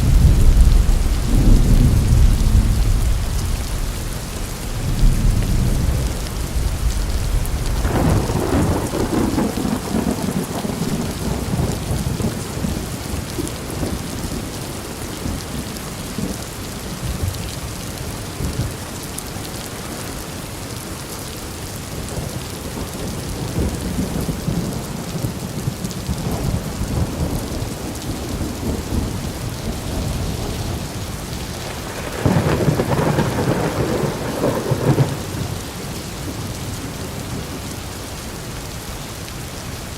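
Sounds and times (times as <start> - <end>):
rolling thunder: 0.0 - 14.5, 22.1 - 37.8
steady rain: 0.0 - 39.9.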